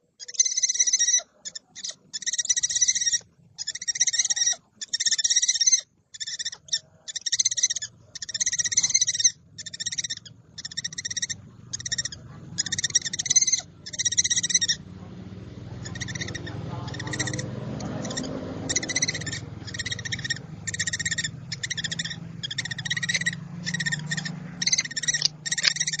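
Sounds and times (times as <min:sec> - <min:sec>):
owl rasping calls: 0:00.0 - 0:26.0
low steady hum: 0:06.5 - 0:26.0.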